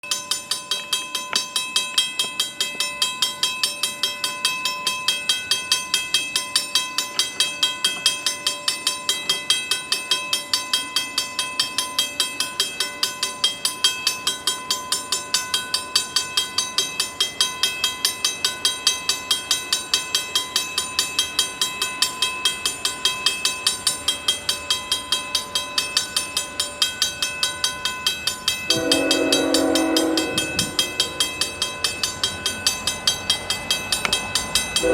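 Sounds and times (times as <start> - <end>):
railway crossing bell ringing: 0.0 - 34.9
locomotive horn blowing: 28.7 - 31.1.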